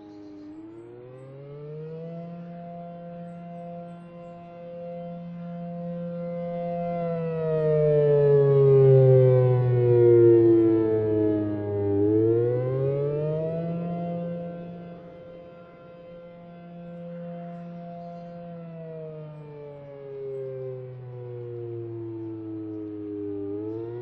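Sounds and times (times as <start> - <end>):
warning siren wailing: 0.0 - 24.0.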